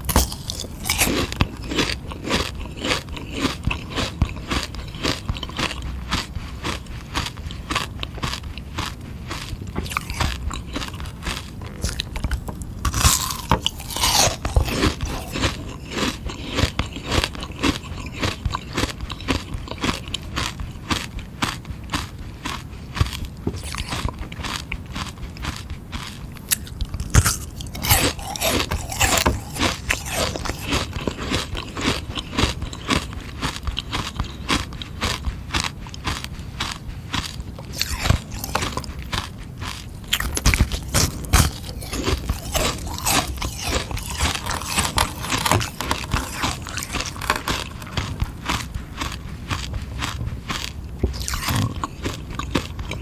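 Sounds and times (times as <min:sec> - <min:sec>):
chewing crunchy ice pop: 0:00.0 - 0:53.0.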